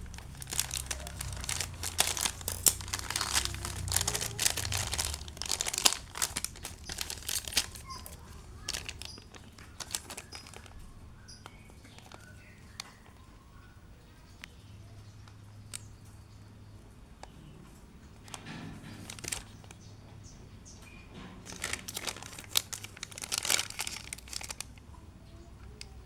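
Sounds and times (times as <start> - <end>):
packaging crinkling and tearing: 0.0 - 13.2, 18.2 - 19.7, 21.4 - 24.8.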